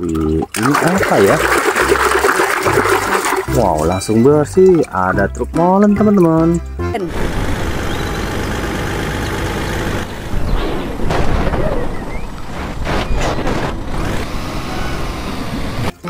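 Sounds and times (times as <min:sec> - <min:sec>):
truck engine: 0:06.6 - 0:16.0
sharp bangs: 0:09.8 - 0:15.6.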